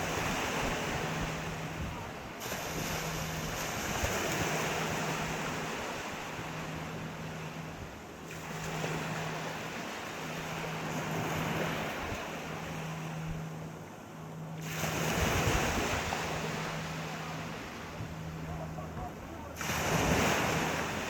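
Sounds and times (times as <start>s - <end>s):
sea waves washing in: 0.0s - 21.0s
steady low hum: 0.0s - 21.0s.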